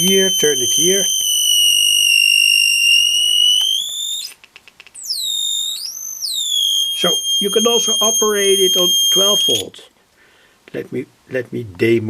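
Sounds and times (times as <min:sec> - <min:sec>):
high-pitched electronic tone: 0:00.0 - 0:04.3, 0:05.0 - 0:09.6
electrical crackles: 0:00.0 - 0:04.4, 0:05.0 - 0:09.6.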